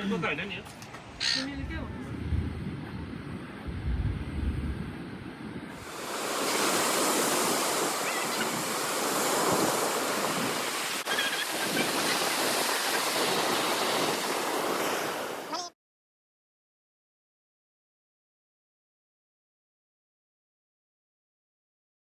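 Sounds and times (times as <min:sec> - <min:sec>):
ocean surf washing onto beach: 0:05.0 - 0:15.7.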